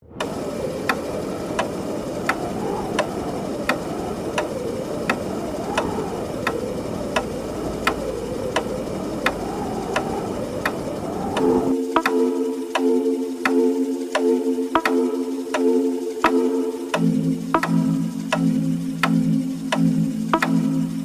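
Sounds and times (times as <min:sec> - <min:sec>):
low rushing noise: 0:00.0 - 0:14.0
clock-like ticking: 0:00.1 - 0:21.0.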